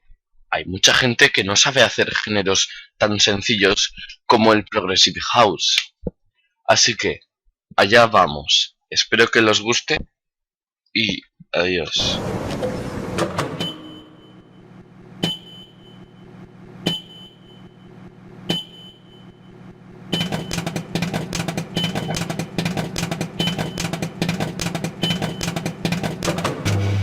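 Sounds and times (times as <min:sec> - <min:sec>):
microwave oven hum: 0:12.0 - 0:27.0
microwave click: 0:12.2 - 0:14.5, 0:20.1 - 0:26.8
short high beep: 0:13.6 - 0:14.6, 0:15.2 - 0:16.2, 0:16.9 - 0:17.8, 0:18.5 - 0:19.4
popcorn popping: 0:20.1 - 0:26.8.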